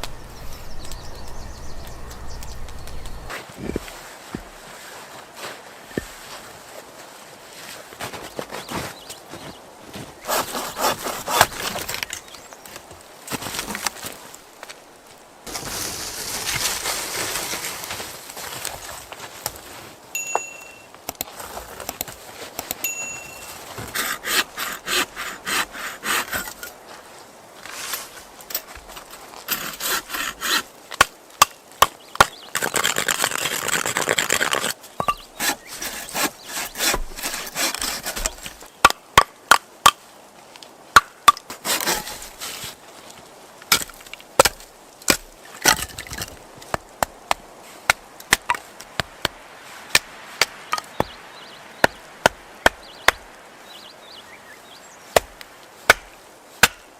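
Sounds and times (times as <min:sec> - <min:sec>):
rasping strokes on wood: 0:10.3 - 0:11.6, 0:23.8 - 0:26.7, 0:35.4 - 0:38.3.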